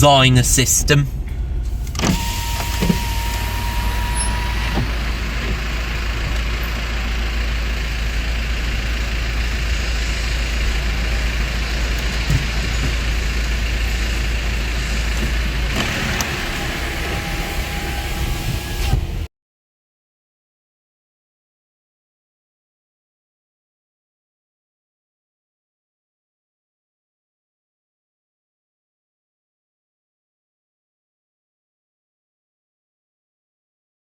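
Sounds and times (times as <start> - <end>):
thin steady whine: 0.0 - 19.3
vehicle engine rumble: 0.0 - 19.3.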